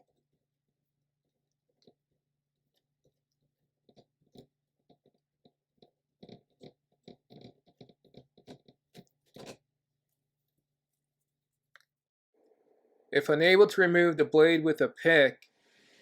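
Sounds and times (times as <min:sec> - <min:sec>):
faint clicks and knocks: 0:01.6 - 0:09.6.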